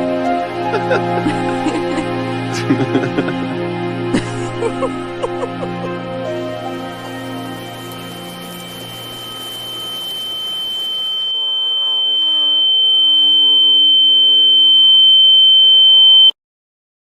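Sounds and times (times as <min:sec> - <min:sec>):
music: 0:00.0 - 0:11.9
high-pitched ringing tone: 0:06.5 - 0:16.3
muffled wavering voice: 0:10.8 - 0:12.6.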